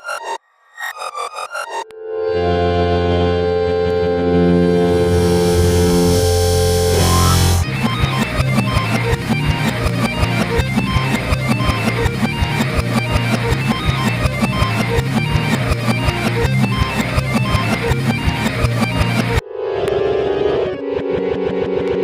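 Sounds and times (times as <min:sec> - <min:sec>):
reversed pizzicato string melody: 0:02.0 - 0:19.4
low bass line: 0:02.4 - 0:19.4.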